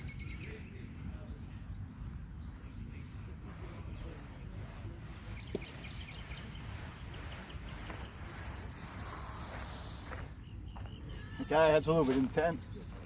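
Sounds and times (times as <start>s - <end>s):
faint bird chirps: 0.0s - 8.2s
hand tool scraping dry turf: 0.0s - 10.5s, 11.4s - 13.0s
wind rumbling on microphone: 0.0s - 11.2s.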